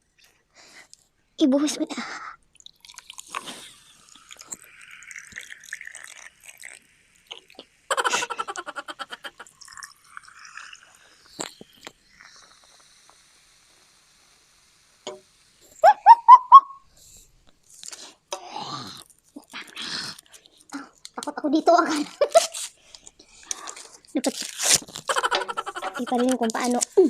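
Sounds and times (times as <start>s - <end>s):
liquid pouring and dripping: 2.5s - 7.8s, 9.3s - 12.8s.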